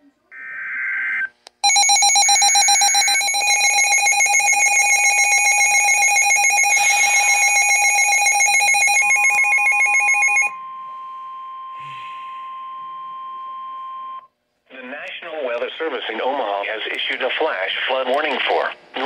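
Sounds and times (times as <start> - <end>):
pulsing electronic alarm tone: 1.6 - 14.2.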